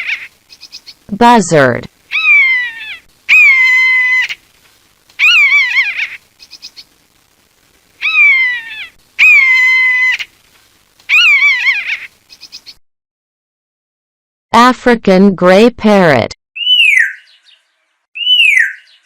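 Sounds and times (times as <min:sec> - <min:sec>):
buzzard calling: 0:00.0 - 0:04.4, 0:05.2 - 0:06.9, 0:08.0 - 0:10.4, 0:11.1 - 0:12.7, 0:18.2 - 0:19.0.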